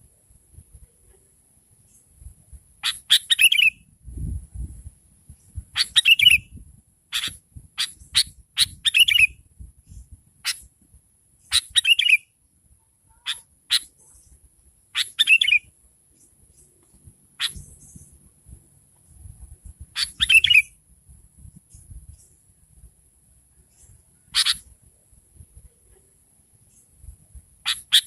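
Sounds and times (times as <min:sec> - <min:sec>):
bird calling: 0:02.8 - 0:03.8, 0:05.8 - 0:06.4, 0:13.1 - 0:14.3, 0:17.4 - 0:18.1, 0:20.0 - 0:20.7, 0:23.8 - 0:24.7, 0:27.6 - 0:28.0.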